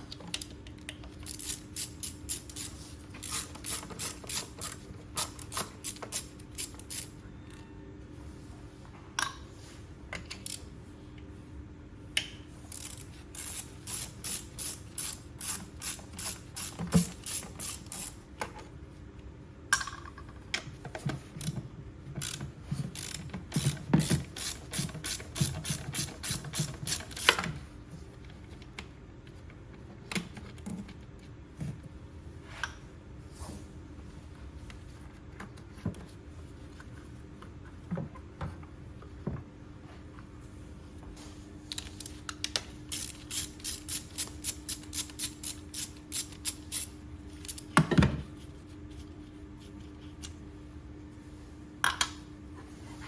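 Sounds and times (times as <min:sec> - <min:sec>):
socket ratchet clicking: 0:42.9 - 0:47.6.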